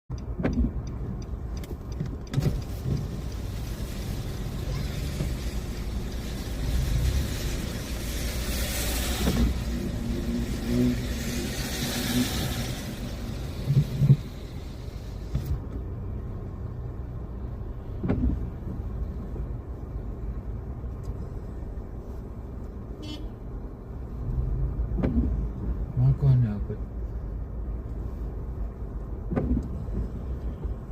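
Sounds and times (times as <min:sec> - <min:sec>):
car engine rumble: 0:00.1 - 0:30.9
rain: 0:02.5 - 0:15.4
tyres hissing on wet road: 0:02.5 - 0:15.6.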